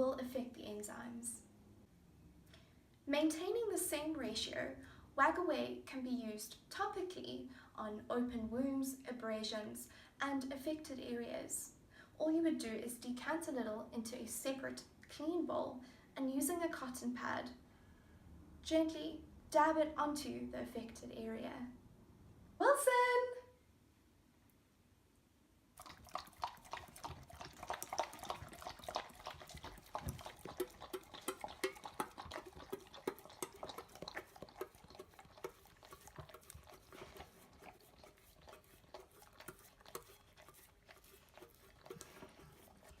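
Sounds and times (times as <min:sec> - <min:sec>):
dog lapping from a bowl: 0:25.8 - 0:43.0.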